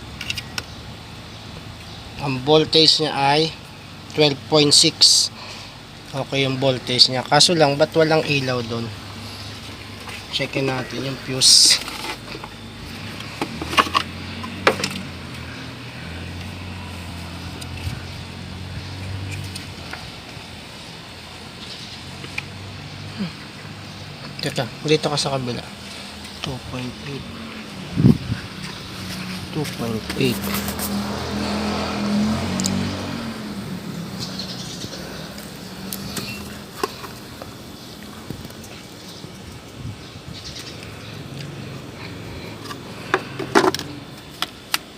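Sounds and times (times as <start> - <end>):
engine hum: 0.0 - 44.9.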